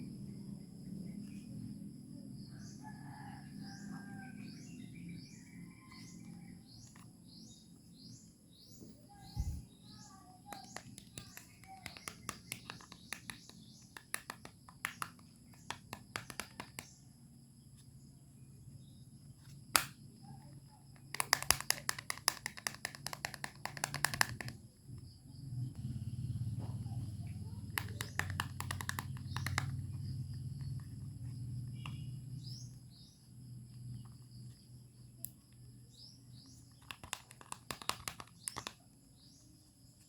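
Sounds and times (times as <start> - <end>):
small hard objects clicking: 10.5 - 16.9, 21.0 - 24.6, 27.6 - 30.8, 36.8 - 38.8.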